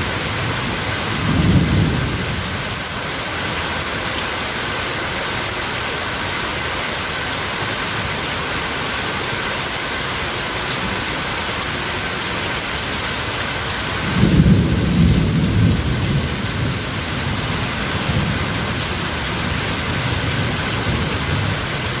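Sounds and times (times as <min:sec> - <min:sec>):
thunder rumbling: 0:00.0 - 0:02.8, 0:14.0 - 0:22.0
rain hissing: 0:00.0 - 0:22.0.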